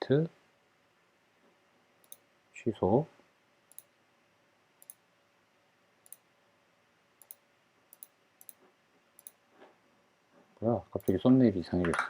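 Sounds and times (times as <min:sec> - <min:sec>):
computer mouse clicking: 0:02.0 - 0:02.2, 0:04.8 - 0:05.0, 0:06.0 - 0:06.2, 0:07.2 - 0:08.6, 0:09.2 - 0:09.4, 0:11.0 - 0:11.2.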